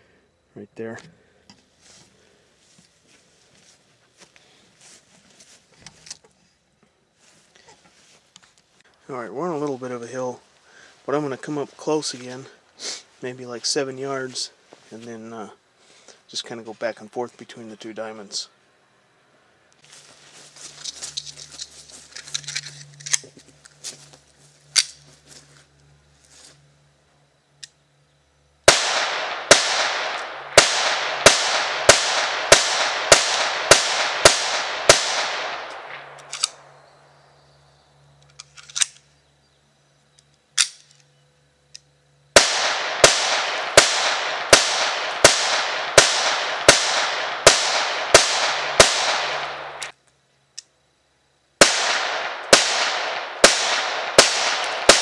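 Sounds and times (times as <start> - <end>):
gun handling clicks: 20.8 - 23.3, 24.7 - 25.0, 34.8 - 36.7, 38.2 - 39.1, 40.1 - 41.1
pistol shots: 28.7 - 36.7, 42.4 - 49.9, 51.6 - 55.0.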